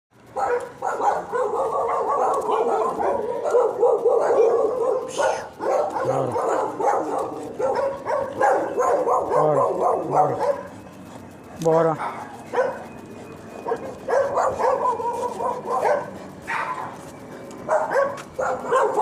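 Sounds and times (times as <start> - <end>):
dog barking and whining: 0.3 - 11.3, 11.9 - 19.0.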